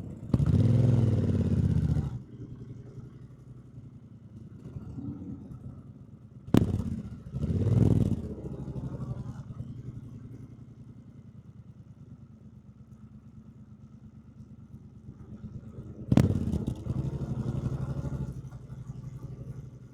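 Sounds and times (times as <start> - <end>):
motorcycle engine rumbling: 0.0 - 4.2, 14.1 - 19.9.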